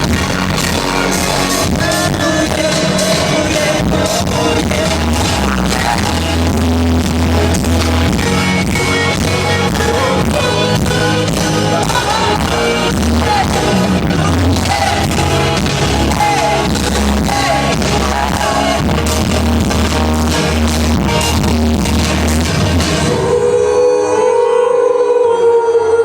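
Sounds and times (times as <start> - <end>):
deep bass line: 0.0 - 23.4
person singing with band: 0.0 - 26.0.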